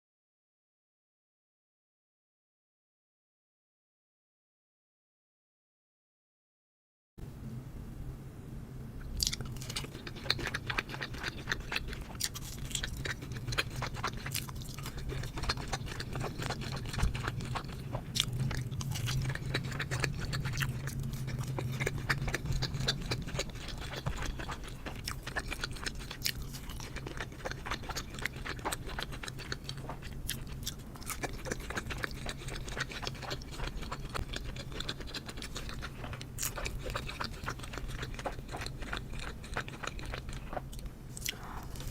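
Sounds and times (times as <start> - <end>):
low steady hum: 7.2 - 41.9
chewing and biting: 9.1 - 41.9.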